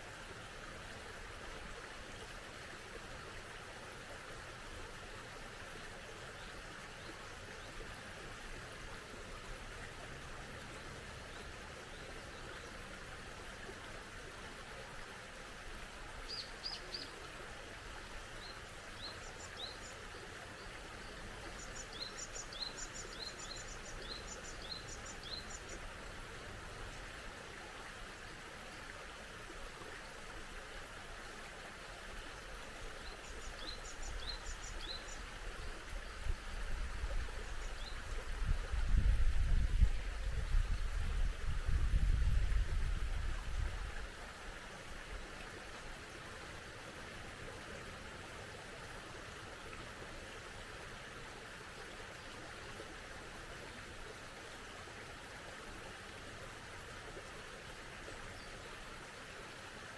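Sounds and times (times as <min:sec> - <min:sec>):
stream running: 0:00.0 - 0:59.9.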